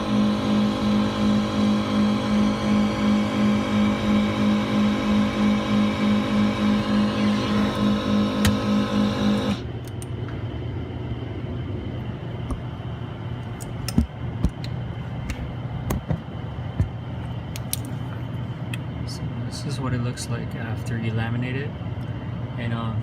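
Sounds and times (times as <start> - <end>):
electric motor pulsing hum: 0.0 - 9.9
steady low hum: 0.0 - 23.0.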